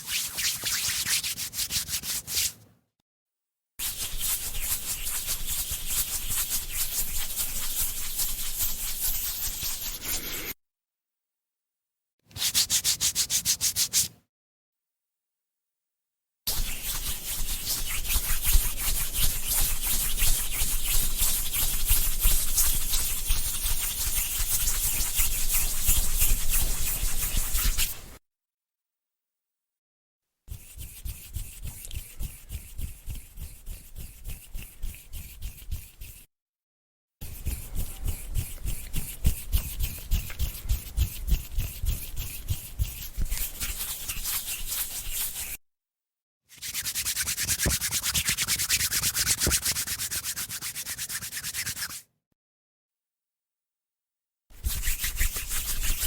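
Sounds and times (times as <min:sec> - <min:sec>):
hands rubbing together: 0:00.0 - 0:02.6, 0:03.8 - 0:10.6, 0:12.3 - 0:14.1, 0:16.5 - 0:28.0, 0:37.2 - 0:45.6, 0:46.6 - 0:52.0, 0:54.6 - 0:56.0.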